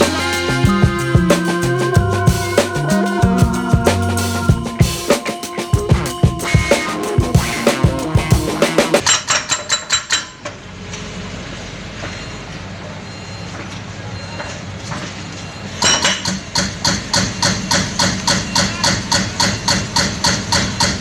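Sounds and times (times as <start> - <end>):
diesel machinery humming: 0.0 - 9.0.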